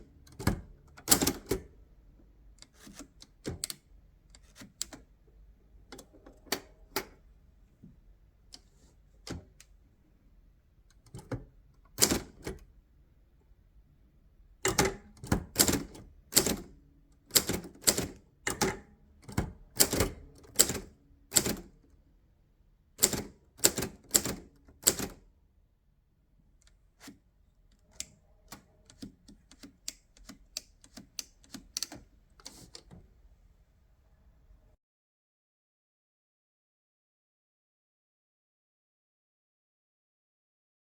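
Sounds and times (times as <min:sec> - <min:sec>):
typewriter keys striking: 0:14.7 - 0:16.7, 0:17.3 - 0:21.7, 0:23.0 - 0:25.2.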